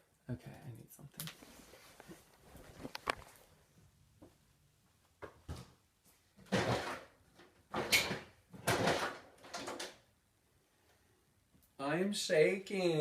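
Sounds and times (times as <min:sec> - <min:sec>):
drawer scraping and rattling: 0:06.5 - 0:07.1.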